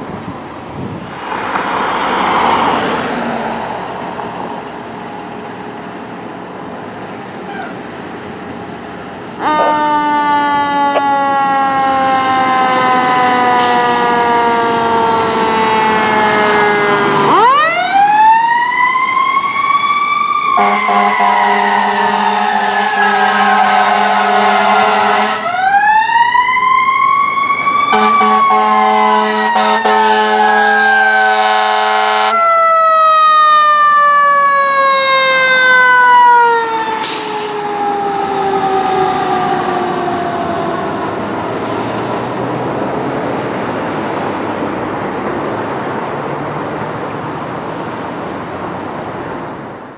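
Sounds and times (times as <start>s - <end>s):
traffic noise: 0.0s - 49.9s
fire engine air horns: 9.2s - 18.2s, 20.4s - 25.9s, 27.8s - 32.8s, 35.0s - 40.9s.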